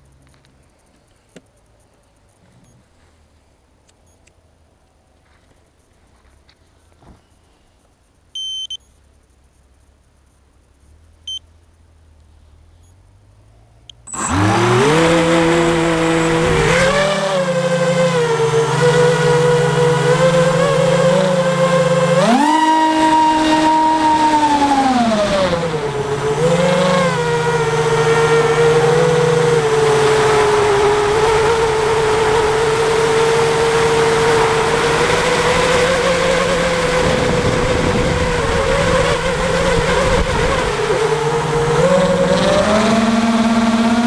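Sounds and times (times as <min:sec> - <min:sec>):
drone motor and propeller whining: 0:13.8 - 0:44.0.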